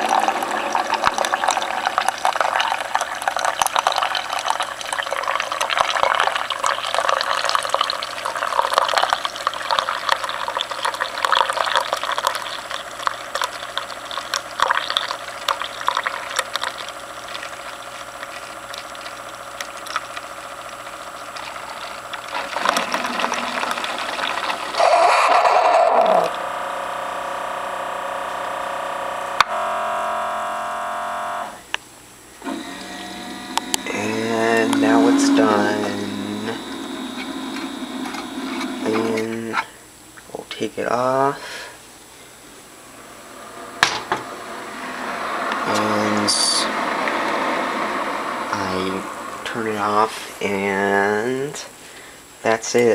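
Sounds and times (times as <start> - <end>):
hot liquid pouring: 0.0 - 25.1, 32.4 - 39.5
coffee maker sputtering: 0.0 - 31.8, 32.4 - 39.6, 43.0 - 51.5
coffee maker mechanical hum: 0.0 - 51.7.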